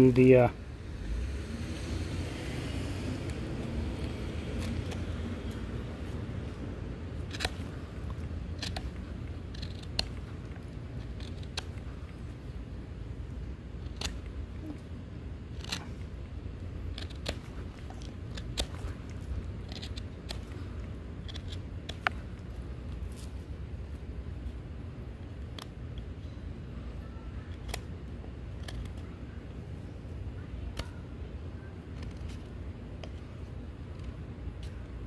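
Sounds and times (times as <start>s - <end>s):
low steady rumble: 0.0s - 35.0s
knife cutting into wood: 7.2s - 12.2s, 16.8s - 23.3s.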